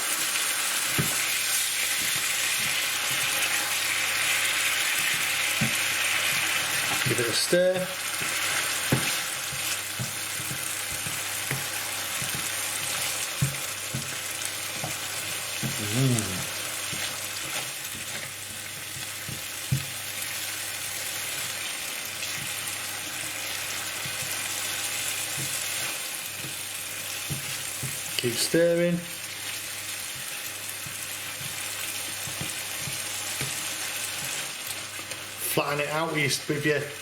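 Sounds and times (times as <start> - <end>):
food sizzling in a pan: 0.0 - 37.0
spatula scraping a pan: 8.0 - 15.8.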